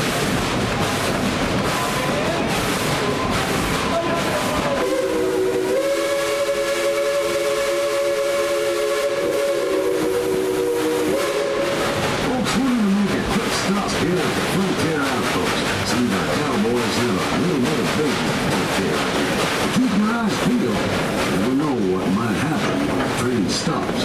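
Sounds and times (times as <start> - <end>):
train rumble and clatter: 0.0 - 24.0
steam locomotive chime whistle: 4.5 - 12.2.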